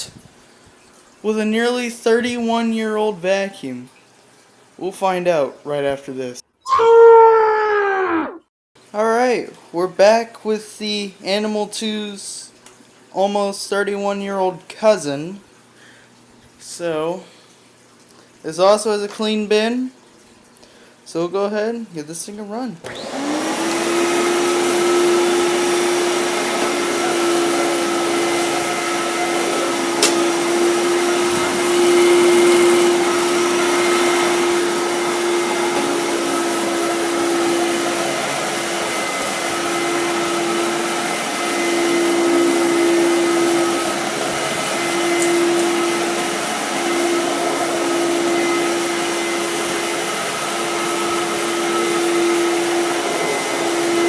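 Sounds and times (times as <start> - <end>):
vacuum cleaner motor hum: 22.8 - 54.0.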